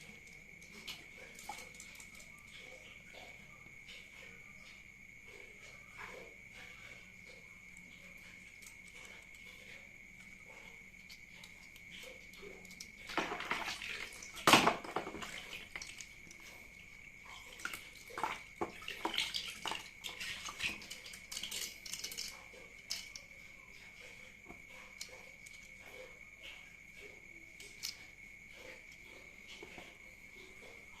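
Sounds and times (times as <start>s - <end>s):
water splashing: 11.8s - 23.3s.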